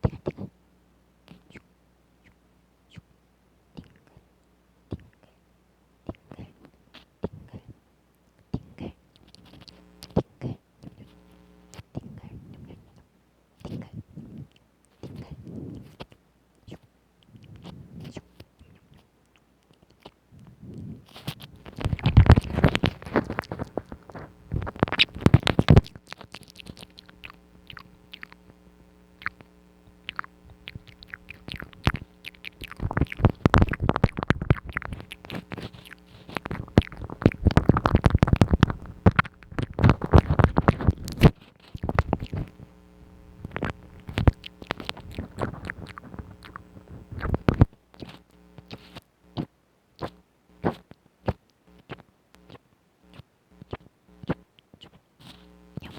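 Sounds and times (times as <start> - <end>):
wet mouth clicks and smacks: 21.1 - 28.6, 29.2 - 42.7, 43.3 - 55.9.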